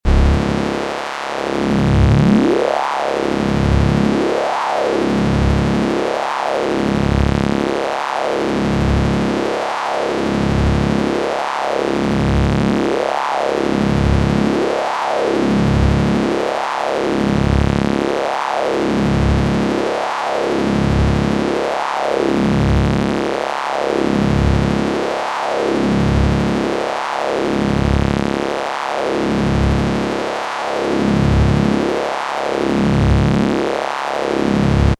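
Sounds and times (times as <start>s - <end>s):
wavering electric buzz: 0.1s - 0.8s.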